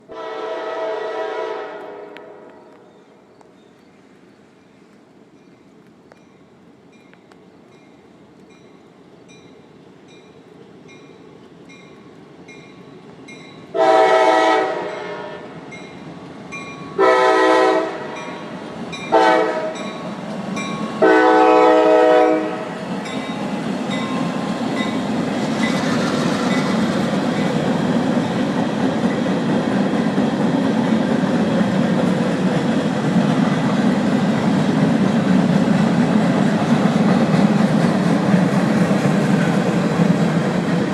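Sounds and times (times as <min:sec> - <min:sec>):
locomotive air horn blasts: 0:00.0 - 0:02.8, 0:13.7 - 0:15.6, 0:17.0 - 0:18.5, 0:19.1 - 0:19.8, 0:21.0 - 0:22.7
train engines and wheels rumbling: 0:00.0 - 0:40.9.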